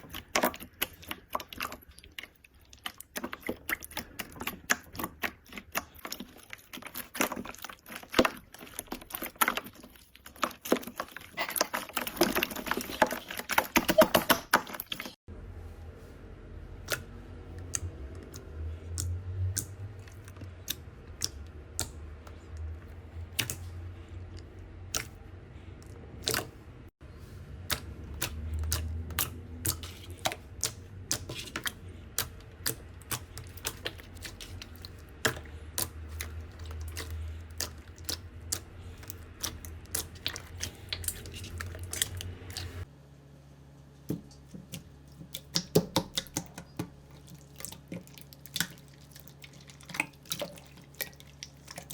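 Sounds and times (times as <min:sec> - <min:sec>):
low steady hum: 0:00.0 - 0:51.9
slime clicking and popping: 0:27.7 - 0:42.9.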